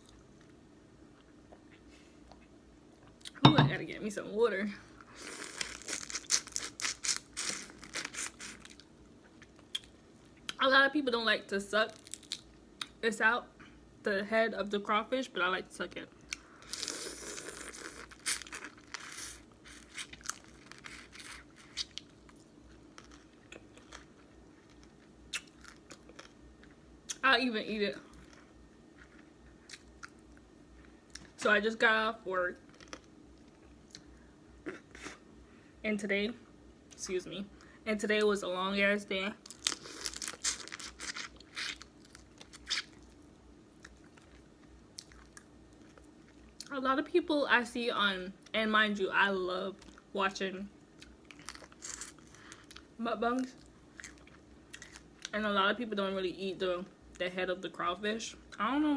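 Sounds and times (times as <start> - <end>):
shell cracking and crunching: 11.9 - 12.5, 39.4 - 43.1
chewing: 43.8 - 46.7, 53.6 - 55.3
wet chewing: 53.6 - 55.3.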